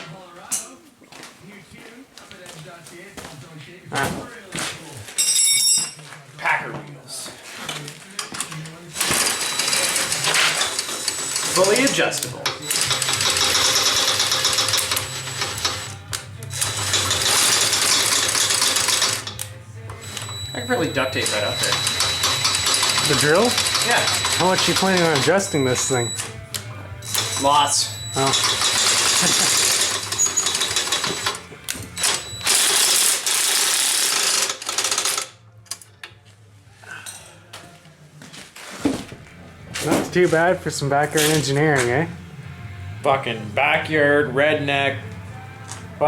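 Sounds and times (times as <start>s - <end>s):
power tool running in bursts: 27.0s - 27.6s, 28.2s - 31.4s.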